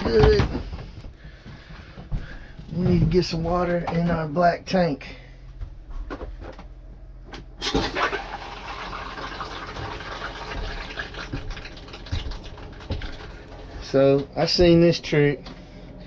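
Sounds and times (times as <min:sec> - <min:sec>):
toilet flush valve opening: 0:07.6 - 0:12.0
water rushing into toilet bowl: 0:07.6 - 0:13.6.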